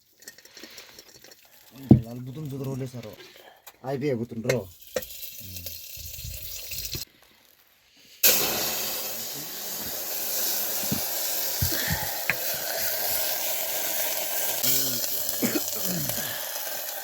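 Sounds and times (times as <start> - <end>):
food sizzling in hot oil: 4.7 - 7.1, 8.2 - 17.0.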